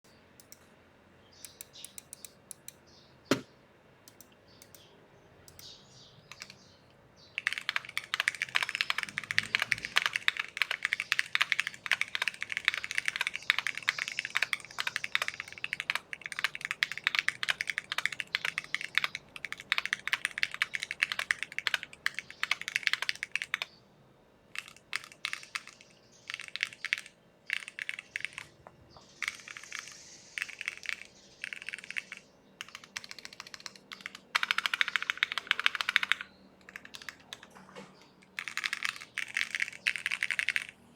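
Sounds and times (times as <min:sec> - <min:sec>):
mechanical keyboard typing: 0:06.3 - 0:06.6, 0:07.4 - 0:23.7, 0:24.6 - 0:37.5, 0:38.2 - 0:40.8.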